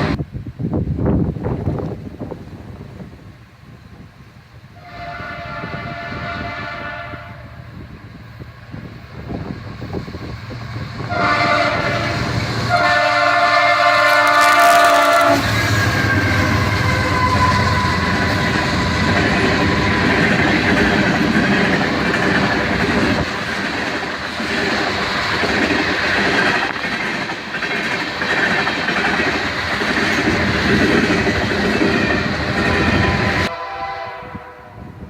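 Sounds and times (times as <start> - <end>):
train wheels clattering on rails: 14.0 - 33.5.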